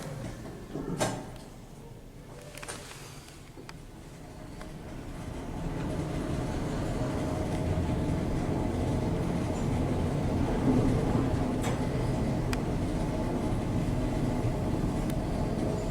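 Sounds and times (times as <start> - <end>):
faint lift hum: 0.0 - 15.9
lift car rumbling in shaft: 4.0 - 15.9.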